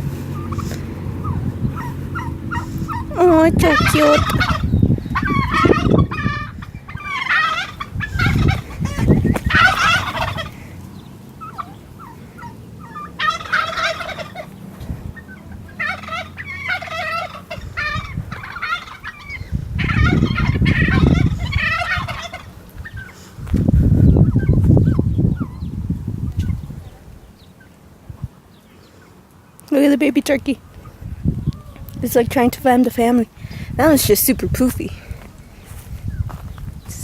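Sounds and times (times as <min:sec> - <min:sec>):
turkeys gobbling: 0:00.0 - 0:23.4, 0:24.0 - 0:25.7.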